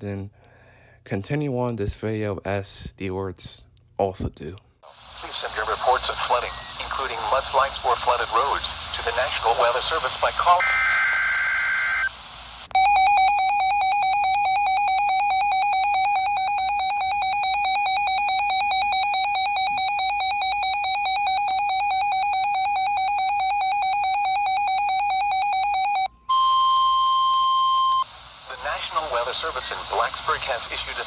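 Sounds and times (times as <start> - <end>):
steady warning tone: 12.8 - 28.0
warbling two-pitch alert alarm: 12.8 - 28.0.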